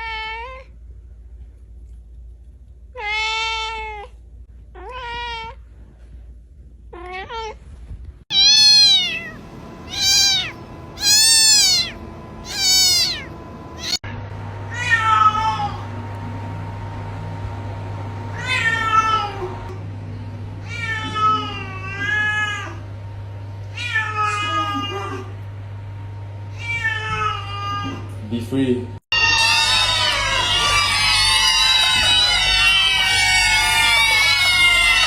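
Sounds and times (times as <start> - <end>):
cats meowing: 3.0 - 4.1, 4.8 - 5.6, 8.3 - 14.0, 14.7 - 15.9, 18.3 - 19.8, 20.6 - 22.8, 23.7 - 25.3, 26.6 - 28.1, 29.2 - 35.0.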